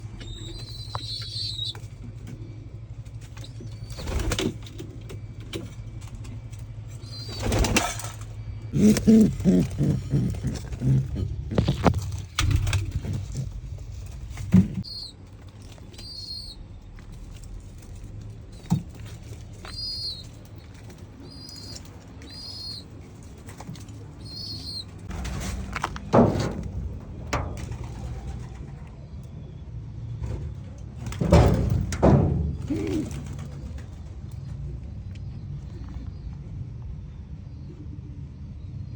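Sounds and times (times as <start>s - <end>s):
pigeons chirping: 0.0s - 36.4s
pigeon wings flapping: 7.0s - 16.0s, 31.0s - 34.2s
low rumble: 8.1s - 20.7s, 25.0s - 38.9s.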